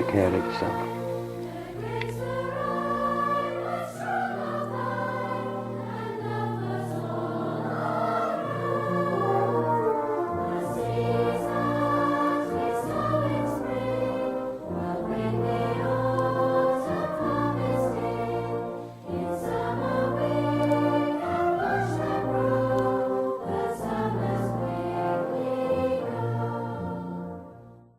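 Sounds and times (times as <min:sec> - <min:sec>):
choir with orchestra: 0:00.0 - 0:27.9.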